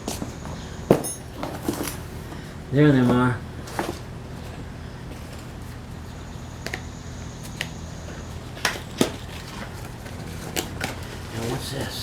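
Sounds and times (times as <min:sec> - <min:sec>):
steady low hum: 0:00.0 - 0:12.0
clicks and knocks of packaging: 0:08.6 - 0:11.3.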